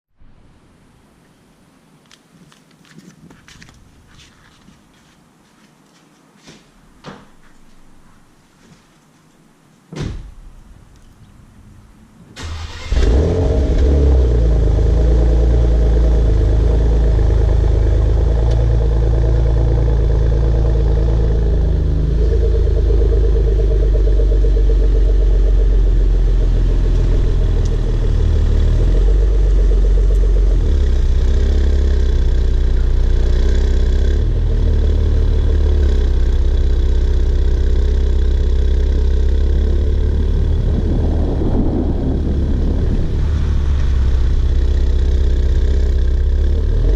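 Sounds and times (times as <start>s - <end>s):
car engine idling: 12.4s - 46.9s.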